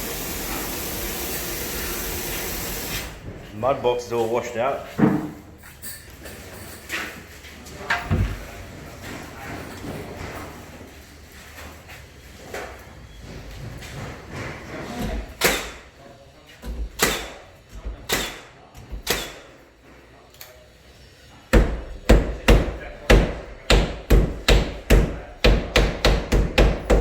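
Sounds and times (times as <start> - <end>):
stapler firing staples: 19.0 - 19.4.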